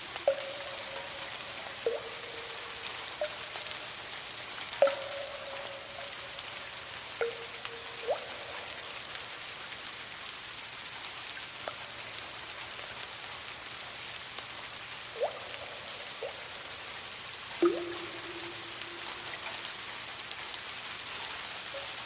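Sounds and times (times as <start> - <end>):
water drops plinking: 0.0 - 4.1, 4.8 - 9.4, 15.2 - 16.8, 17.6 - 20.0
soft rain hiss: 0.0 - 22.0.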